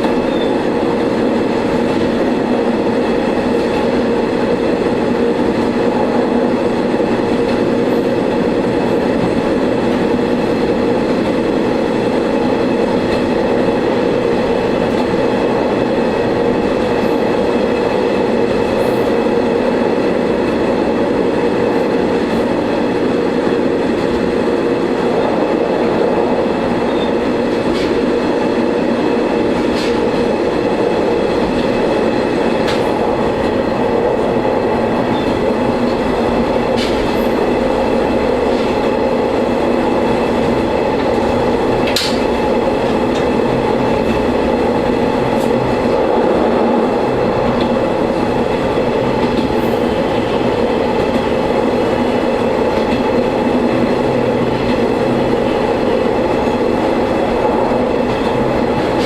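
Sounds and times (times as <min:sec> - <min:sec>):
railcar engine drone: 0:00.0 - 0:59.0
wheel and track noise: 0:00.0 - 0:59.0.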